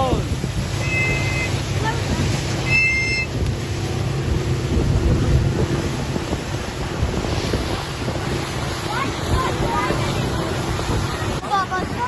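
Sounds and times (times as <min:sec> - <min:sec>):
wind buffeting microphone: 0:00.0 - 0:12.0
short high tone: 0:02.6 - 0:03.3.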